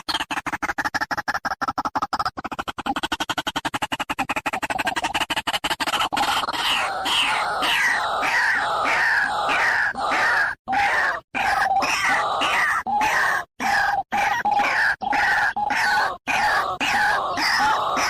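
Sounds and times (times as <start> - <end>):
bird calling: 5.9 - 18.0.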